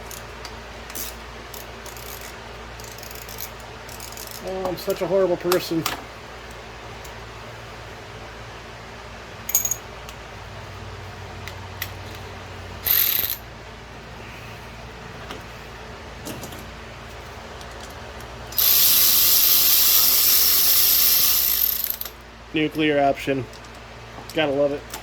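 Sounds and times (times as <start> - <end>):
air wrench hissing rattle: 0.9 - 4.5, 12.8 - 13.4, 18.5 - 22.2
tools clicking: 0.9 - 4.8, 9.5 - 9.8, 12.8 - 13.4, 17.6 - 22.2.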